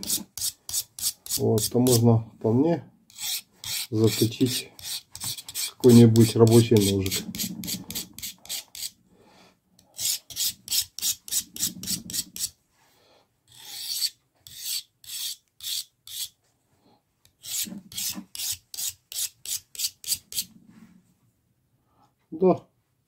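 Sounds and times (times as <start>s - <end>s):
knife rasping on sharpening file: 0.0s - 2.0s, 3.1s - 9.0s, 9.9s - 12.6s, 13.5s - 16.4s, 17.3s - 20.5s.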